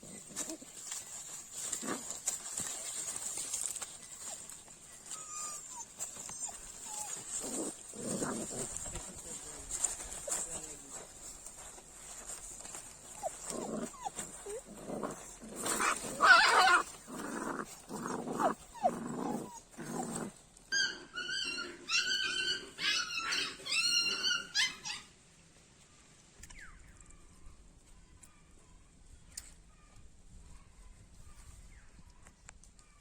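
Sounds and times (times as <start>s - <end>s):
animal high whining calls: 20.7s - 25.0s.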